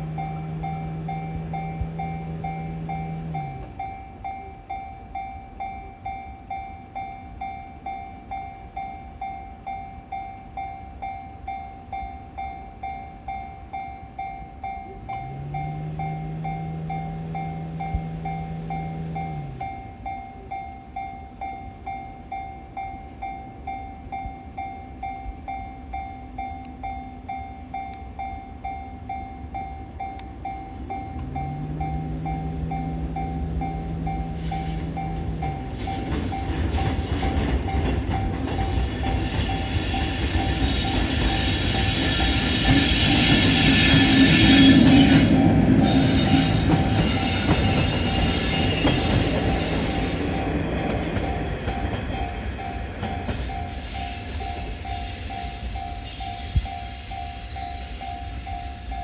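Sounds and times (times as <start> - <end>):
low steady hum: 0.0 - 35.8
level crossing bell ringing: 0.0 - 36.6
train rumble and wheel noise: 0.0 - 59.0.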